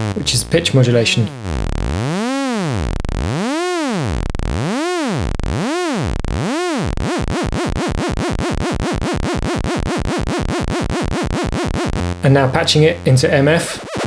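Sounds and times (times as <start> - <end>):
sawtooth oscillator pitch sweeping: 0.0 - 14.0.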